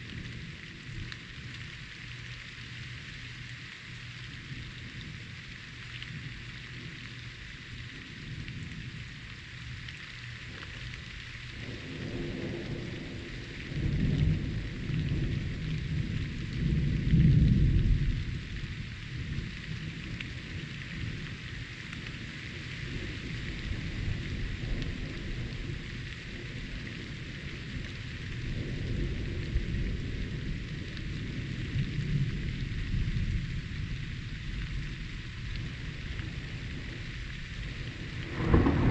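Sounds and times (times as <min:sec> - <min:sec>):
steady rain: 0:00.0 - 0:38.9
rolling thunder: 0:35.9 - 0:38.9.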